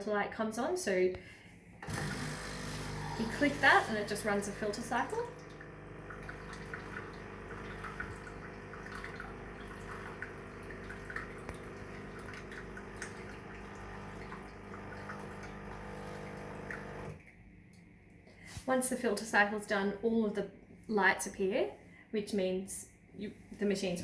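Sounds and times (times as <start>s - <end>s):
coffee machine pump humming: 1.8s - 17.2s
water dripping into a mug: 4.1s - 17.2s.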